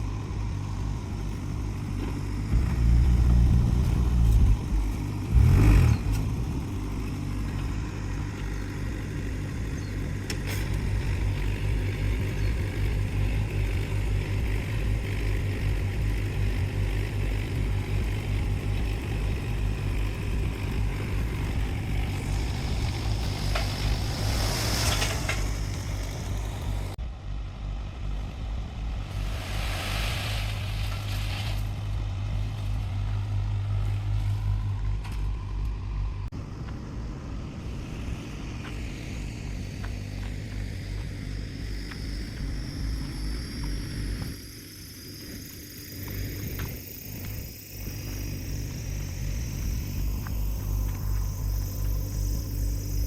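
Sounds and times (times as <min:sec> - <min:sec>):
diesel engine running: 0:00.0 - 0:53.0
loud rushing noises: 0:29.1 - 0:32.0.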